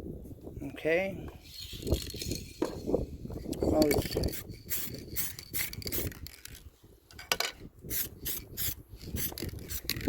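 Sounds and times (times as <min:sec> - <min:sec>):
aerosol can spraying: 0:04.3 - 0:06.1.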